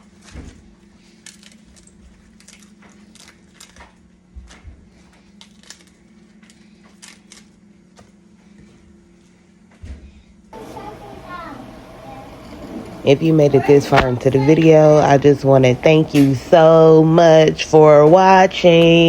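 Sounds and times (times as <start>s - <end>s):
steady low hum: 0.0s - 19.0s
lettuce leaves snapping: 5.2s - 8.0s.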